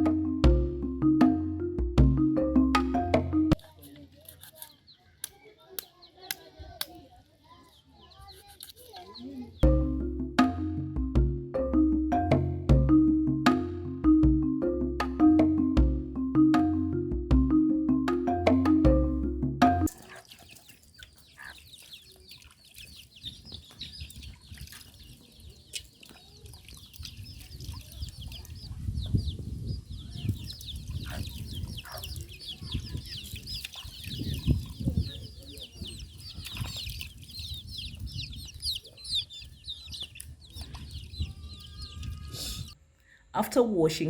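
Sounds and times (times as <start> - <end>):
chickens clucking: 19.9 - 42.8.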